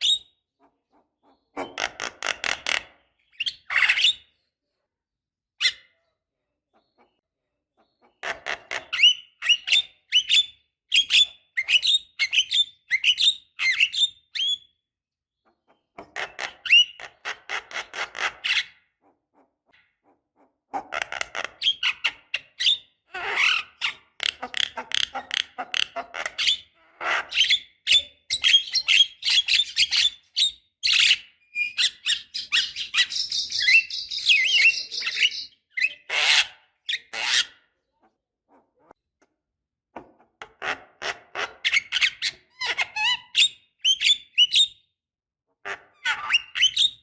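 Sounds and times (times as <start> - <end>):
bird harsh raspy calls: 7.8 - 14.6, 15.4 - 39.0.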